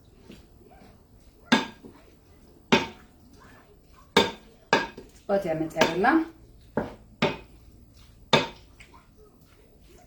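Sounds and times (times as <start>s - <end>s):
utensil clinking against cookware: 1.4s - 2.1s, 2.7s - 7.6s, 8.3s - 8.9s.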